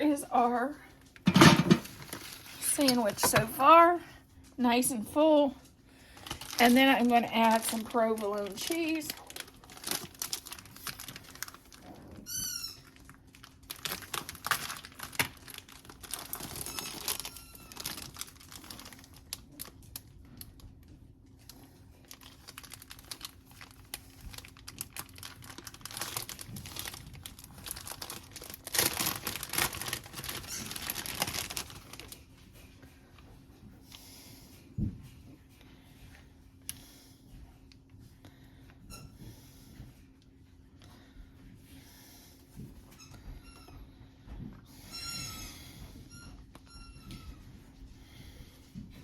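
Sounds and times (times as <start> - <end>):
plastic wrapping crinkling: 0.0 - 32.7.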